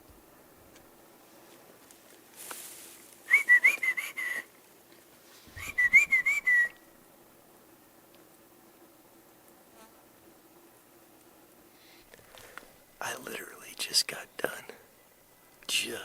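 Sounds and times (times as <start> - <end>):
loud warbling whistled call: 5.6 - 6.9.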